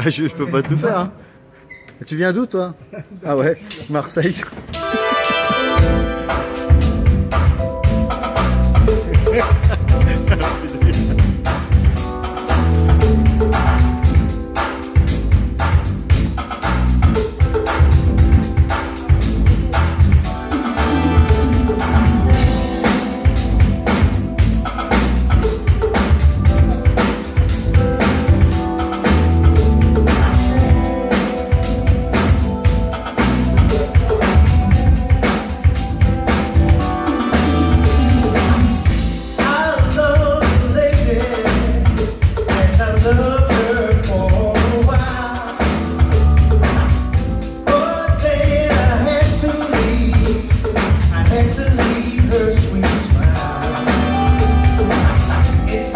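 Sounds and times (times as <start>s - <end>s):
drum kit groove: 3.6s - 55.9s
funk band playing: 4.4s - 55.9s
wavering lead melody: 4.8s - 16.4s, 17.0s - 40.2s.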